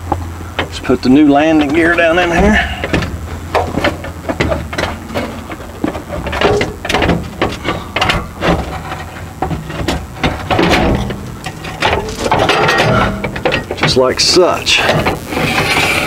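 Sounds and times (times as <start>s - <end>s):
low steady hum: 0.0s - 16.0s
metal knocks and scraping: 1.6s - 14.0s.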